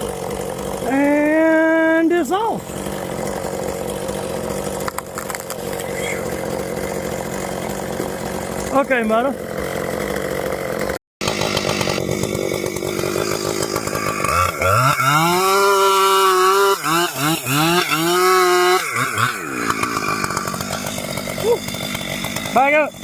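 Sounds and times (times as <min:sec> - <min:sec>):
chainsaw revving and cutting: 0:00.0 - 0:23.0.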